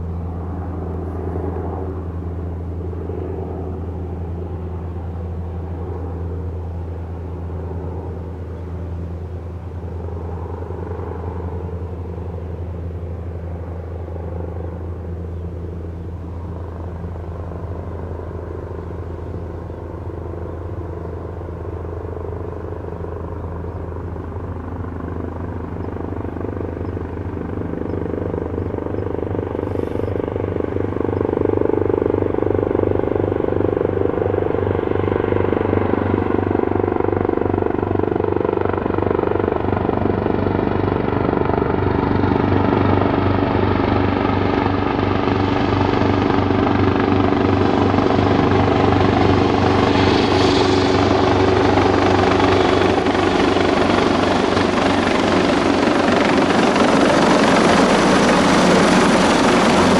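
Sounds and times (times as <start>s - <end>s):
helicopter rotor beating: 9.9s - 59.9s
turbine noise: 44.0s - 59.9s.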